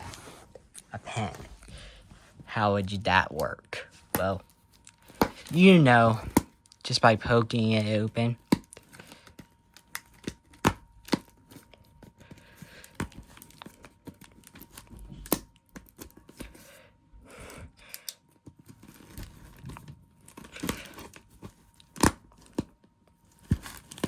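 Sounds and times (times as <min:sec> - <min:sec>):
paper crinkling and rustling: 0:00.0 - 0:02.5, 0:03.4 - 0:17.0, 0:17.9 - 0:24.0
pen tearing through paper wrapping: 0:18.6 - 0:22.7.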